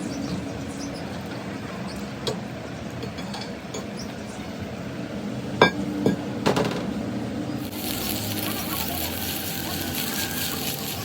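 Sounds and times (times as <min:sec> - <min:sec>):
low machine hum: 0:03.6 - 0:11.0.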